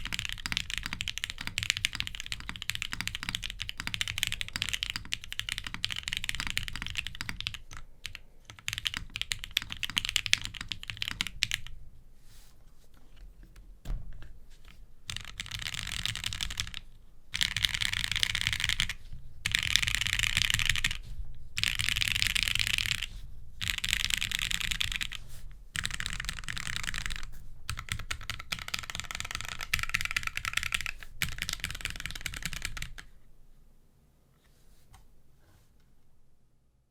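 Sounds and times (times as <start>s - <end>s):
typing on mechanical keyboard: 0.0s - 11.7s, 15.1s - 21.0s, 21.6s - 25.2s, 25.8s - 33.1s.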